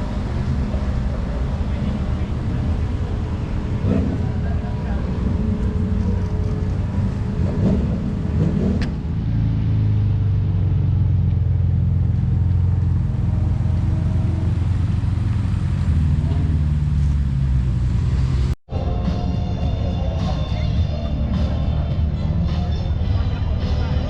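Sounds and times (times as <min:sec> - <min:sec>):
faint voices: 0:00.0 - 0:07.6, 0:19.4 - 0:24.0
car engine rumbling: 0:00.0 - 0:24.0.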